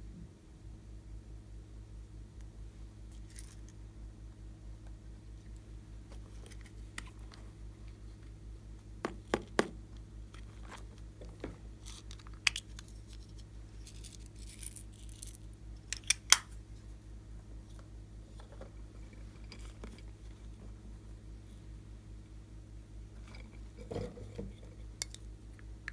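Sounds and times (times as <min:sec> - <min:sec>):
low hum: 0:00.0 - 0:25.9
clicks and taps of small objects: 0:11.3 - 0:16.5, 0:25.0 - 0:25.3.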